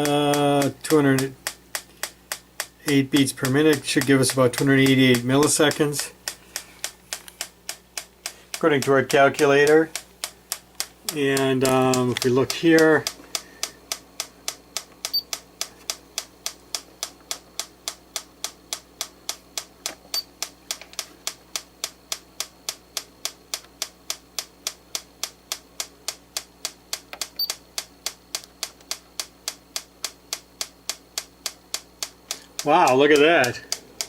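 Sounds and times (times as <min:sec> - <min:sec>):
metronome ticking fast: 0:00.0 - 0:06.4, 0:07.4 - 0:20.2, 0:28.9 - 0:34.0
faint steady hum: 0:00.0 - 0:34.0.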